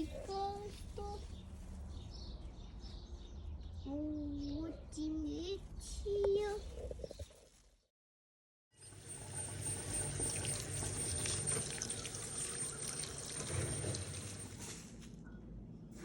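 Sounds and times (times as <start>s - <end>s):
liquid pouring: 8.9s - 14.6s.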